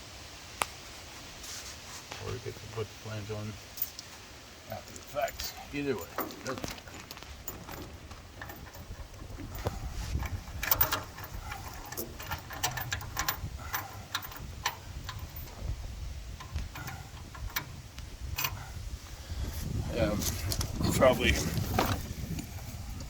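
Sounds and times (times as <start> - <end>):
clicks and knocks on pipe fittings: 6.0 - 15.6, 16.4 - 18.7.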